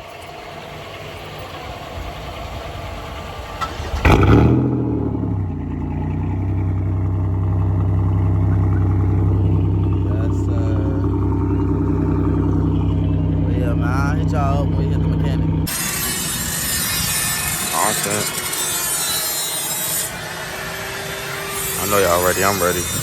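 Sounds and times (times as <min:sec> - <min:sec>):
car engine starting and idling: 0:00.0 - 0:18.8.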